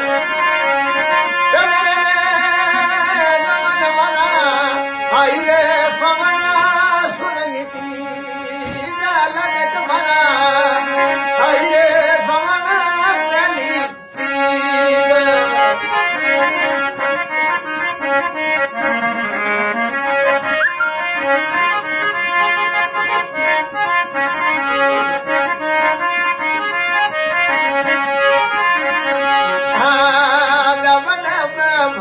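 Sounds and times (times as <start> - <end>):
reedy keyboard melody: 0.0 - 32.0
held drone note: 20.0 - 21.4.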